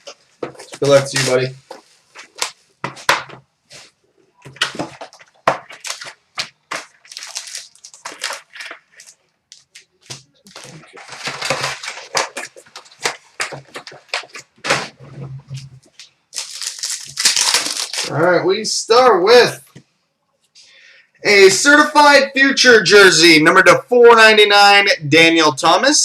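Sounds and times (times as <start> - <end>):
wrapping and packs tearing: 4.5 - 15.0, 15.8 - 18.2.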